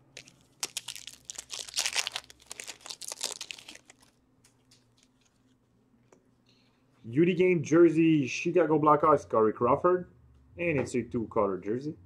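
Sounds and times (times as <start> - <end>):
foil wrapper tearing and crinkling: 0.1 - 5.4.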